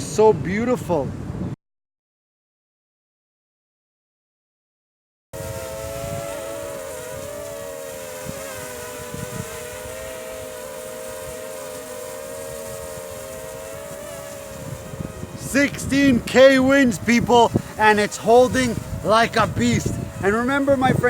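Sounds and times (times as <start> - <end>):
wind rumbling on microphone: 0.0 - 1.6, 5.4 - 21.0
drone propellers buzzing: 5.4 - 21.0.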